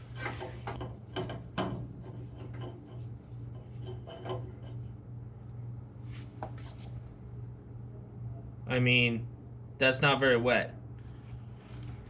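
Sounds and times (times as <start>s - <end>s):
pump hose rubbing and scraping: 0.0s - 4.9s
steady low hum: 0.0s - 12.0s.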